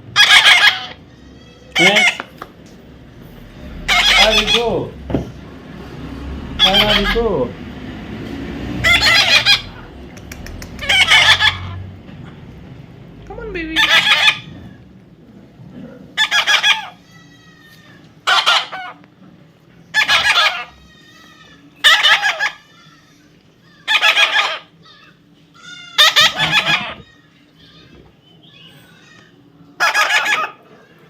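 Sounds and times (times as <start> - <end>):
parrot squawking harshly: 0.1 - 2.4, 3.4 - 5.0, 6.4 - 7.5, 8.8 - 11.9, 13.6 - 14.8, 16.2 - 19.0, 19.9 - 30.7.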